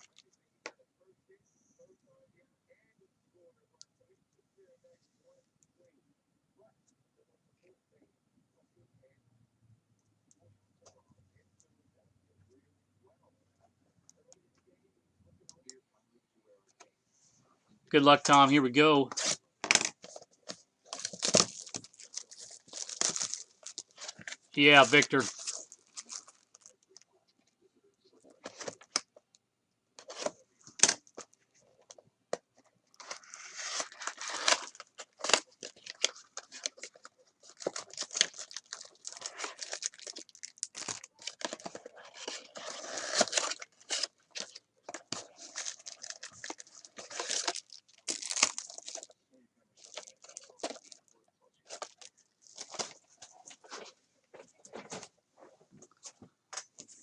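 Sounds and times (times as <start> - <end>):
card wrappers crinkling: 18.3 - 27.0, 32.9 - 49.2, 49.8 - 53.9
cards being handled: 19.1 - 26.7, 33.0 - 49.1, 51.7 - 55.1
wrapper tearing: 20.9 - 26.8, 33.0 - 49.1, 49.8 - 51.0.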